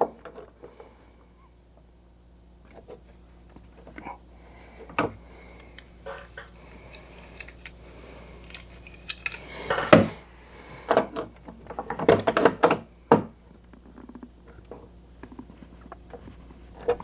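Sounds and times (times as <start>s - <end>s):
pliers clanking on metal: 8.4s - 10.2s.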